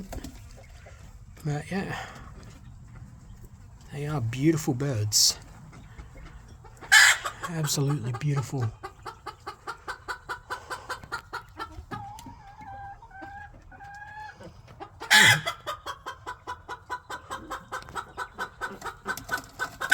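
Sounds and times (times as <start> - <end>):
hen clucking: 0.0 - 19.9
hen drawn-out calls: 5.7 - 19.9
hen squawk: 6.8 - 7.7, 15.0 - 19.0.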